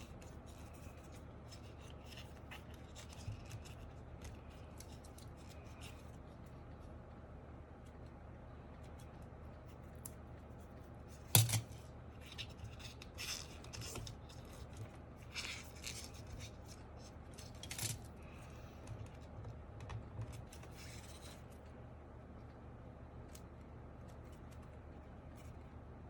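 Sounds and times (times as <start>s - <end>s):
scraping and rubbing on keyboard: 0.0s - 6.4s, 8.9s - 21.7s.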